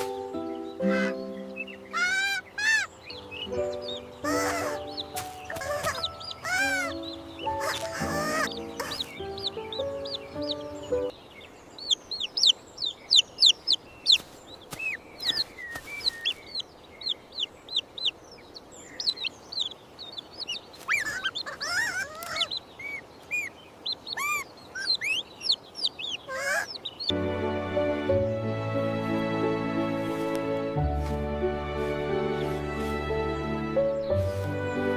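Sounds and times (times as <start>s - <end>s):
background music: 0.0s - 11.1s, 27.1s - 34.9s
birds chirping: 0.0s - 34.9s.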